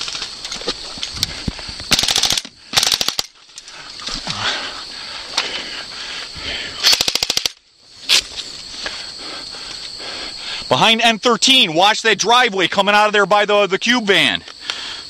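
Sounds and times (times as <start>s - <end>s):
airsoft rifle bursts: 1.9s - 3.4s, 6.8s - 7.6s
sharp crack: 6.8s - 8.2s.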